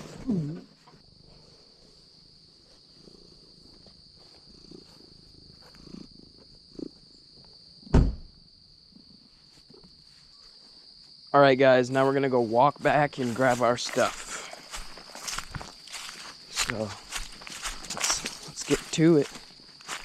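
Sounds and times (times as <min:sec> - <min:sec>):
insects chirring: 0:00.0 - 0:20.0
loud thump: 0:07.9 - 0:08.4.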